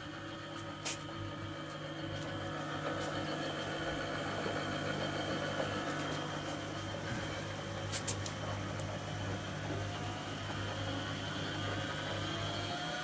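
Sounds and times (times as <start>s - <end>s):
washing machine motor hum: 0.0s - 13.0s.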